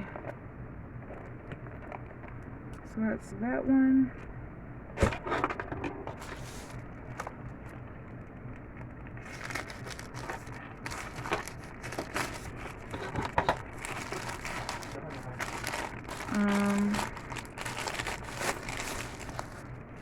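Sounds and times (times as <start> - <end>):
plastic packaging crinkling: 1.0 - 2.5, 8.4 - 20.0.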